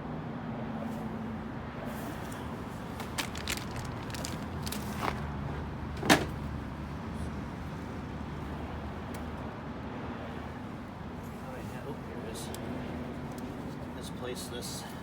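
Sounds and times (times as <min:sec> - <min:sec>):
low background rumble: 0:02.2 - 0:07.6
metal parts clicking: 0:03.0 - 0:05.2.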